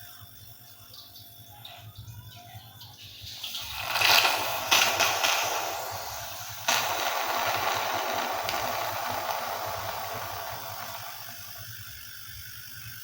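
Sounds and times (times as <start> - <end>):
refrigerator compressor humming: 0.0 - 13.0
rushing hiss through hose: 3.2 - 11.8.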